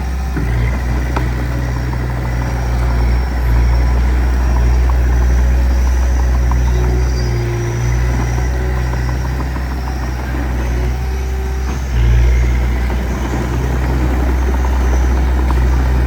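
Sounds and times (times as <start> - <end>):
heavy machinery diesel engine: 0.0 - 16.0.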